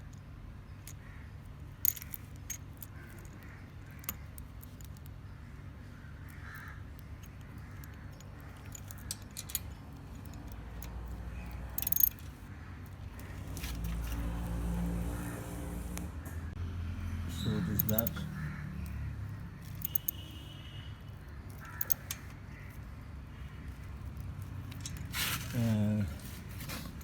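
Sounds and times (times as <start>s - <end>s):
socket clicking on metal nut: 7.2s - 12.4s, 19.6s - 20.2s, 21.5s - 22.4s.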